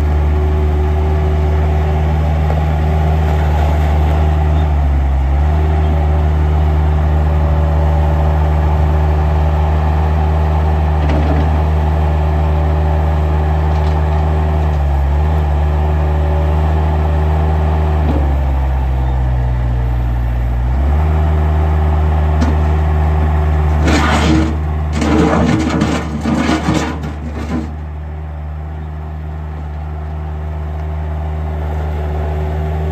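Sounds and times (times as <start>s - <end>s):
loader engine running: 0.0s - 32.9s
loud knocks and metallic clatter: 23.8s - 27.9s.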